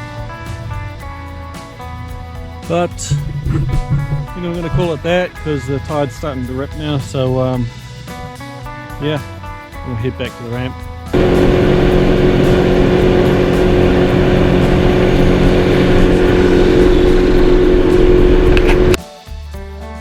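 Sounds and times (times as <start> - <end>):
jet ski engine running: 3.1 - 5.0, 11.1 - 19.0.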